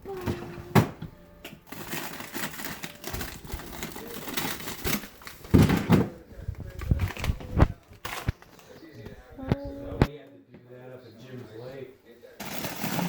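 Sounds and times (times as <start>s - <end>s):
plastic packaging crinkling: 1.6s - 5.5s, 6.4s - 8.9s.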